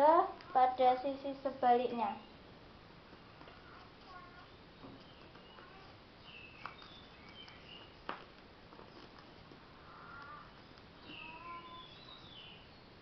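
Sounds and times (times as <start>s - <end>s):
faint bird chirping: 0.4s - 8.1s, 8.8s - 13.0s
sharp clicks: 6.6s - 8.5s.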